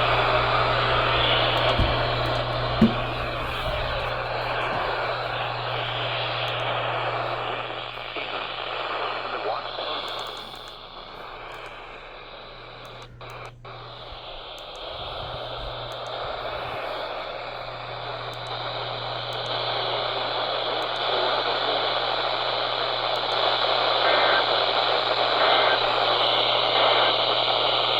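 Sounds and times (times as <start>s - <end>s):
low hum: 0.0s - 21.0s
radio static hiss: 0.0s - 27.9s.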